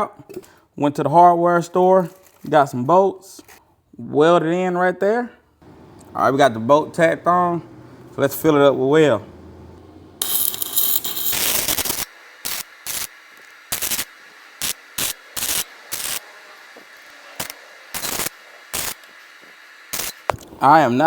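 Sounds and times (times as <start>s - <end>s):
arc welder crackling: 5.6s - 21.0s.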